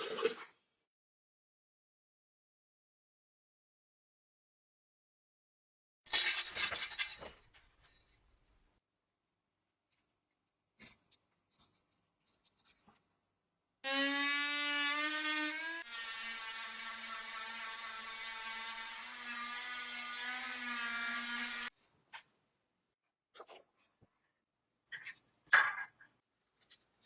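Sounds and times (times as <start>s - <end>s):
power tool motor whirring: 13.9s - 21.7s.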